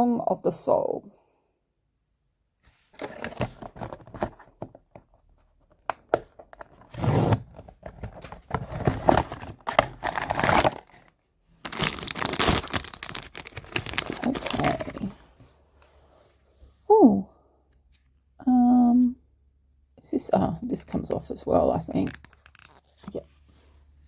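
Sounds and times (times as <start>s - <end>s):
packaging tearing and crinkling: 8.1s - 15.1s, 22.0s - 22.9s.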